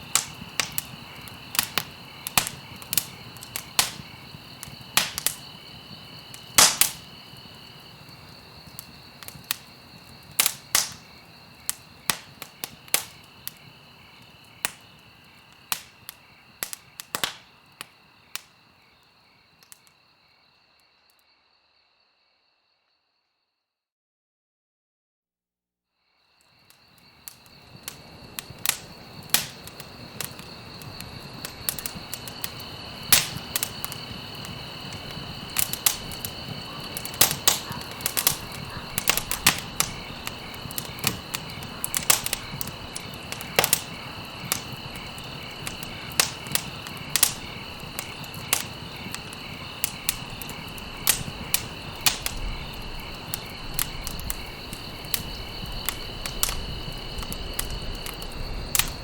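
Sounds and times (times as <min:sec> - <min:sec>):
campfire crackling and popping: 0:00.0 - 0:20.1, 0:26.6 - 0:59.0
high-pitched insect trill: 0:26.0 - 0:59.0.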